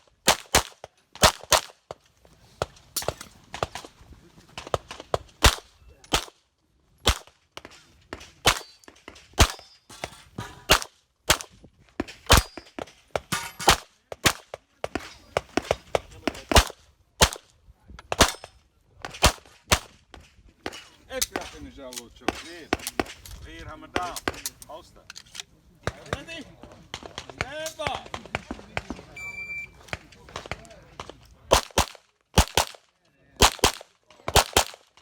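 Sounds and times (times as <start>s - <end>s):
pistol shots cracking: 0.1s - 1.8s, 4.8s - 6.4s, 7.0s - 7.3s, 9.3s - 9.7s, 10.7s - 11.5s, 12.3s - 15.0s, 15.6s - 17.4s, 31.5s - 32.8s, 33.4s - 35.0s.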